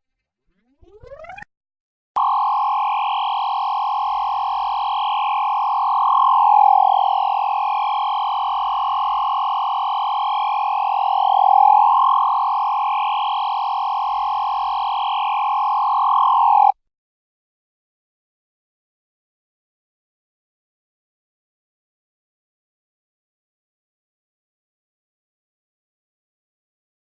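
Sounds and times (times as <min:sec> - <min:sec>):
electronic laser hum: 0:02.2 - 0:16.8.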